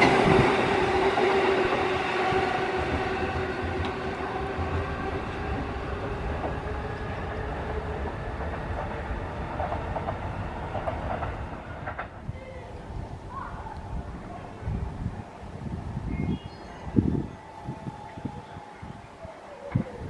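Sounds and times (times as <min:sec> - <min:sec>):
electric train motor hum: 0:00.0 - 0:11.8
train wheels rumbling and clattering: 0:00.0 - 0:12.4.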